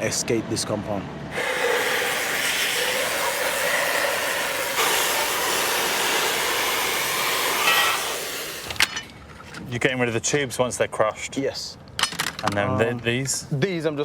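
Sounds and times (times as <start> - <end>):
metal cutting hiss: 1.3 - 9.1.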